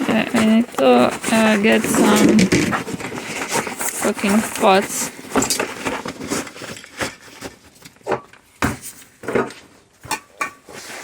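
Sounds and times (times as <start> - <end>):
tools clattering on a table: 5.3 - 6.0, 6.6 - 10.8.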